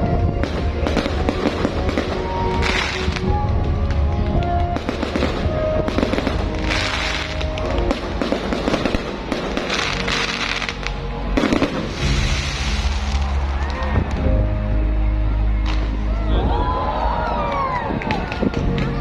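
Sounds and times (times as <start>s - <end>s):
fireworks crackling and bursting: 0.0s - 14.3s
music playing: 0.0s - 19.0s.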